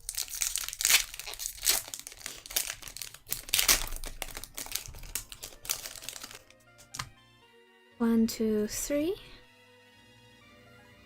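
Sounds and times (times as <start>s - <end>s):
foil wrapper tearing and crinkling: 0.0s - 7.1s.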